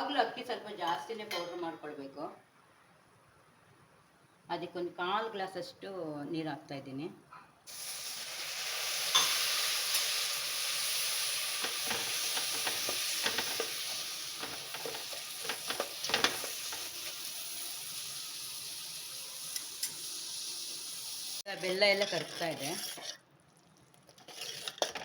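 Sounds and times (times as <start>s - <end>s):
sizzling in a pan: 7.7s - 23.2s
spoon scraping a pan: 11.6s - 17.2s, 21.5s - 23.2s, 24.1s - 25.0s.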